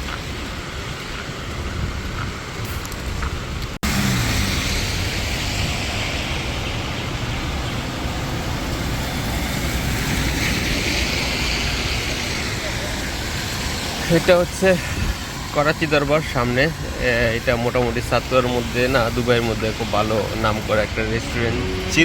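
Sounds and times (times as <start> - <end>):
car traffic on wet street: 0.0 - 22.0
rain hiss: 0.0 - 22.0
vehicle engine: 3.8 - 22.0.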